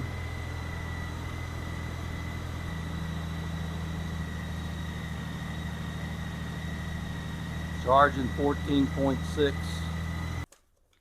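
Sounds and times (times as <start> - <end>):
motorcycle engine idling: 0.0 - 10.5.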